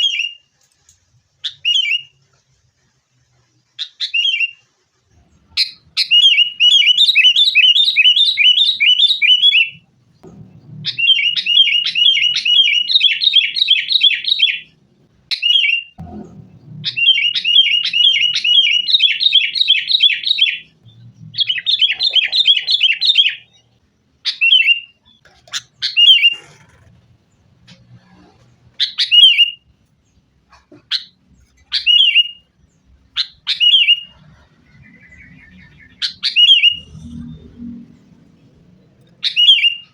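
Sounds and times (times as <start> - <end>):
bulbuls chattering: 15.4 - 37.5.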